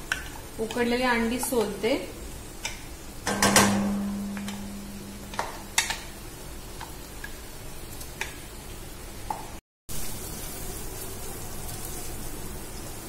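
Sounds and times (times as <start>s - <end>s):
kitchen clicks and taps: 2.6s - 4.7s, 5.3s - 6.1s
low metallic ring: 3.4s - 5.3s
paste sizzling in a pan: 4.0s - 13.0s.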